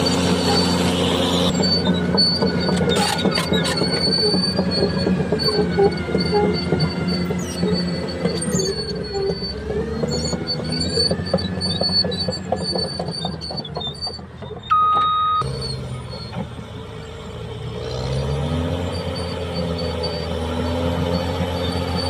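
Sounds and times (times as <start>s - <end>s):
tracks squealing and clanking: 0.0s - 17.2s, 17.8s - 22.0s
bulldozer engine running: 0.0s - 22.0s
short steady beep: 14.7s - 15.4s.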